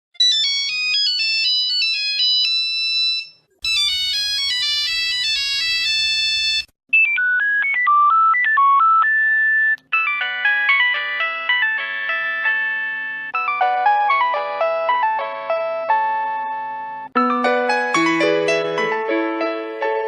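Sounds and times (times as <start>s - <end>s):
phone ringtone melody: 0.2s - 19.5s.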